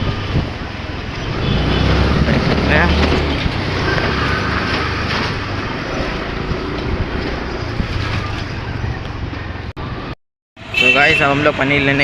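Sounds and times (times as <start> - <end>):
wind buffeting microphone: 0.0 - 9.4
road traffic noise: 0.0 - 12.0.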